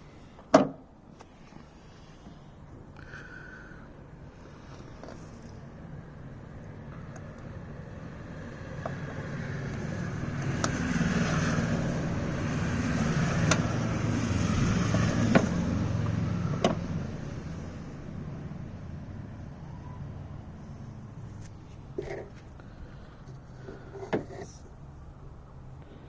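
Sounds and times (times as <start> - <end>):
vehicle passing by: 4.4 - 24.0.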